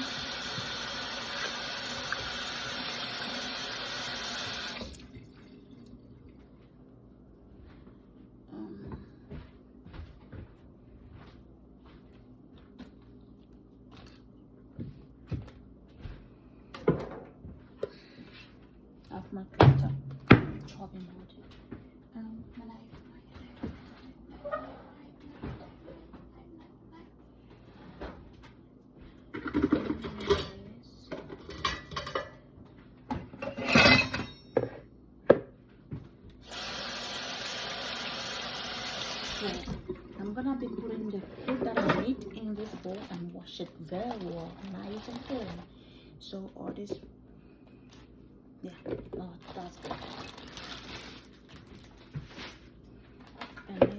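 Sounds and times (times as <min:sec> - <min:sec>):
tap running water: 0:00.0 - 0:06.0, 0:36.4 - 0:43.0
kitchen utensils clattering: 0:33.3 - 0:34.8.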